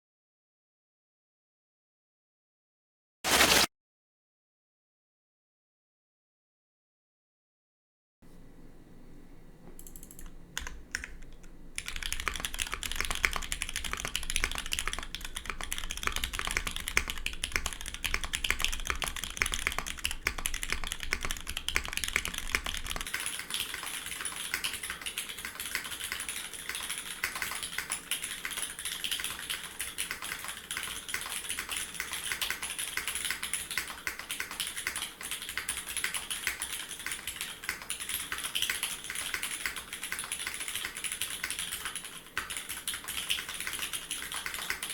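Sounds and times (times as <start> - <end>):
mechanical keyboard typing: 9.8 - 44.9.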